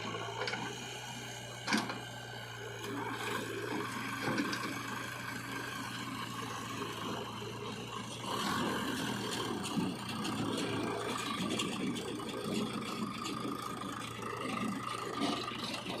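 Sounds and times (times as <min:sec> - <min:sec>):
diesel engine running: 0:00.0 - 0:16.0
machinery rattling and clanking: 0:00.0 - 0:16.0.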